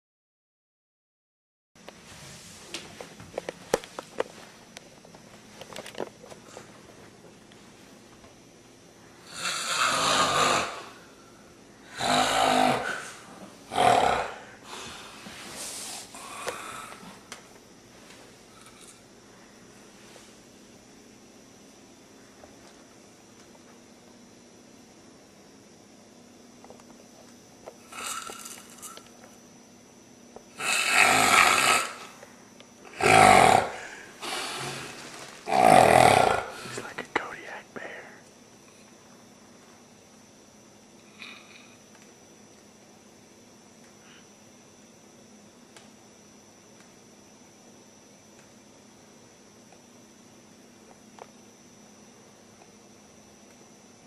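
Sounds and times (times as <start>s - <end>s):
person snoring: 9.2s - 11.2s, 11.8s - 17.2s, 27.8s - 28.6s, 30.5s - 32.2s, 32.9s - 38.2s.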